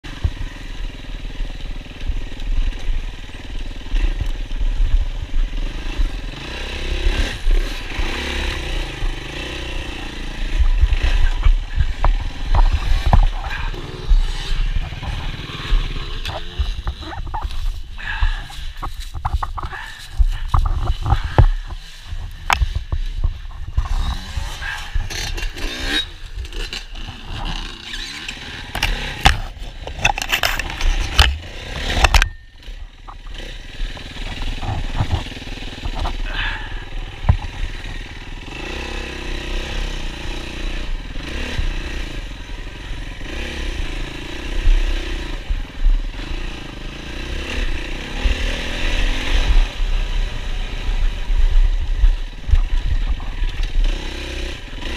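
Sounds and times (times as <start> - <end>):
motorcycle engines idling and revving: 0.0 - 54.9
knocks and rattles against camera: 10.6 - 25.5, 28.7 - 33.4, 34.0 - 36.2.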